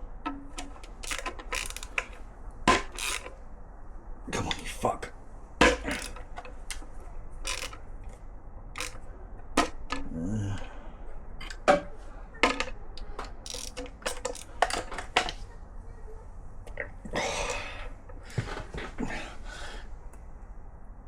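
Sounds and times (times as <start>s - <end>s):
wrench clicking and knocking: 0.3s - 3.4s, 5.6s - 6.8s, 7.4s - 7.8s, 8.8s - 10.1s, 12.4s - 15.4s.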